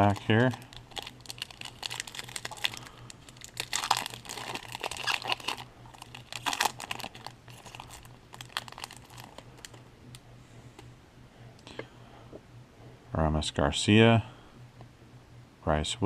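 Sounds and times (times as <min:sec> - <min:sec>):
wrapper tearing and crinkling: 0:00.0 - 0:09.8
faint low hum: 0:00.0 - 0:16.0.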